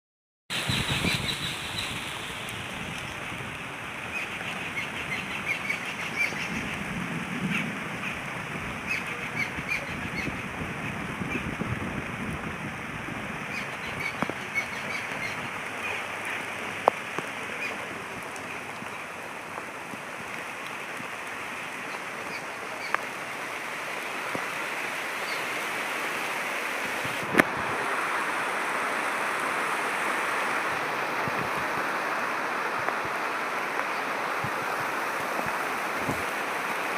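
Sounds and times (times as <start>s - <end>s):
small birds chirping: 0.5s - 2.0s, 13.5s - 16.6s
steady rain hiss: 0.5s - 36.9s.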